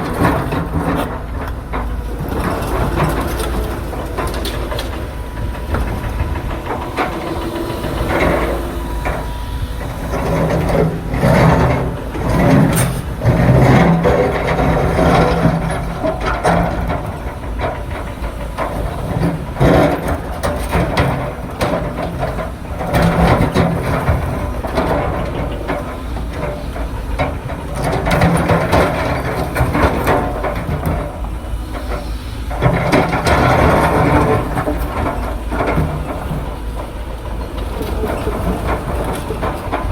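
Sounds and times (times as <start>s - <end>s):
excavator diesel engine running: 0.0s - 39.9s
knocks and clatter: 31.8s - 39.9s.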